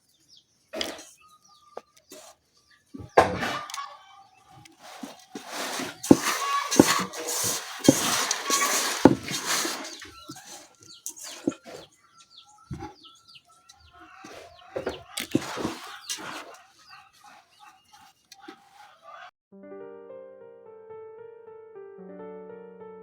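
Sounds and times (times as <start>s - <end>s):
hens clucking: 0.6s - 19.3s
noisy flurry with sharp knocks: 4.9s - 11.7s.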